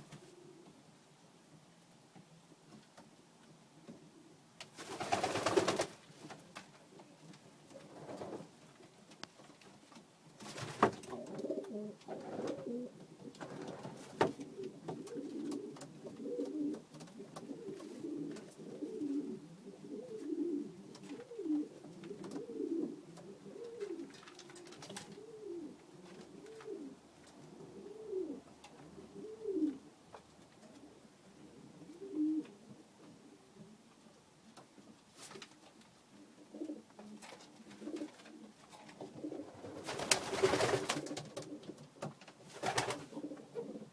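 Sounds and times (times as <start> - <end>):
pigeons cooing: 11.1 - 29.9, 30.9 - 32.7, 42.6 - 43.9.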